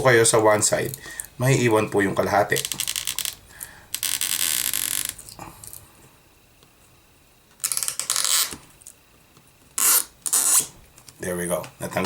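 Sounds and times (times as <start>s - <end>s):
adhesive strip crackling: 2.6s - 5.3s, 7.6s - 8.6s, 9.8s - 10.7s.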